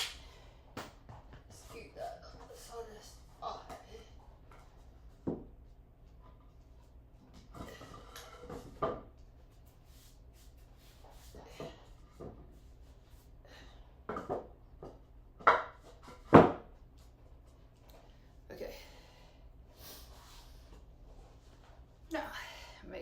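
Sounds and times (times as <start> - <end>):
tools knocking on hard floor: 5.2 - 5.5, 14.1 - 16.7.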